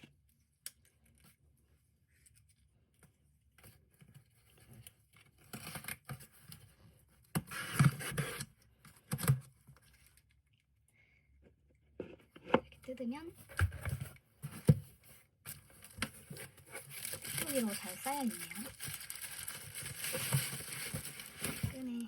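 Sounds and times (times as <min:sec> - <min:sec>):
package being torn open: 0:15.9 - 0:21.8.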